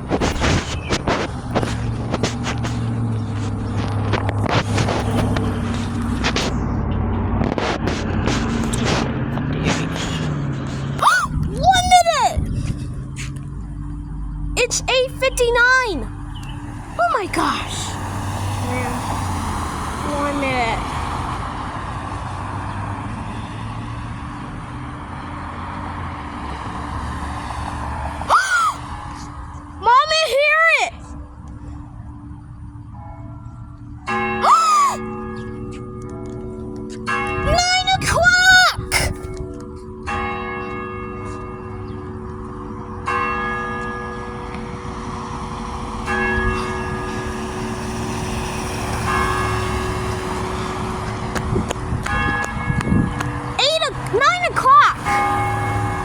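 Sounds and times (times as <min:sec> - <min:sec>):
vehicle engine running: 0:00.0 - 0:31.9, 0:43.8 - 0:56.0
church bell tolling: 0:31.0 - 0:34.4, 0:35.0 - 0:56.0.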